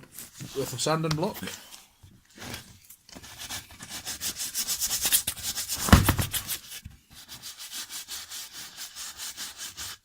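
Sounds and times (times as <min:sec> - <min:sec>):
sanding block rasping on wood: 0:06.4 - 0:10.0.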